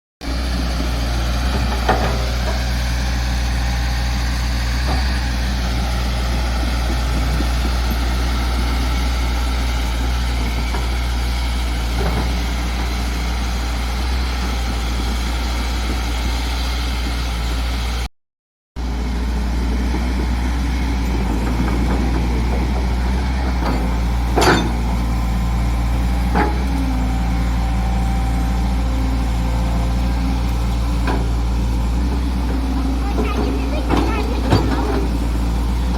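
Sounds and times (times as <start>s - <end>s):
excavator engine running: 0.2s - 18.1s, 18.8s - 35.9s
sharp metallic knocks: 23.7s - 24.9s.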